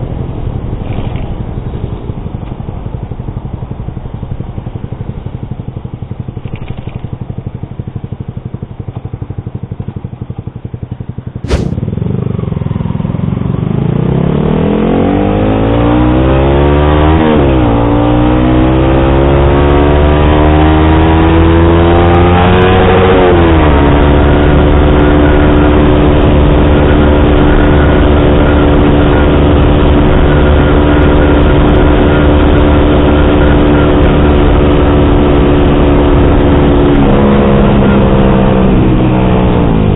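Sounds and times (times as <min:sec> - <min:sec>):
motorcycle engine: 0:00.0 - 0:15.6, 0:17.5 - 0:39.9
sharp knock: 0:11.4 - 0:11.8.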